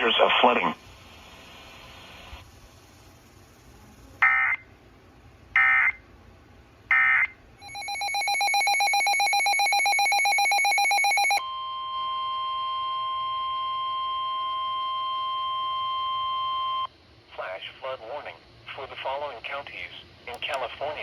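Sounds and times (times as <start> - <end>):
data tone bursts: 7.6 - 11.4.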